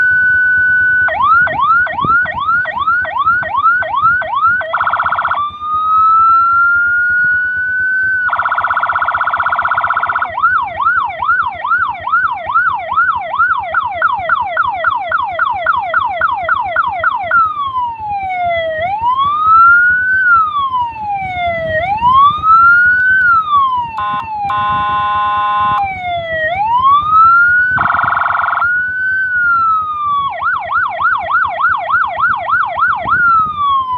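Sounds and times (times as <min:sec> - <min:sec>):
electronic siren yelp and wail: 0:00.0 - 0:33.9
buzzy horn blasts: 0:24.0 - 0:25.8.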